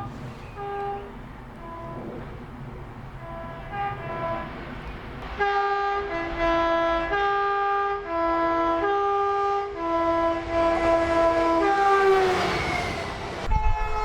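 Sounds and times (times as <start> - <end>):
two-tone train horn: 0.0 - 2.2, 3.2 - 4.7, 5.3 - 14.0.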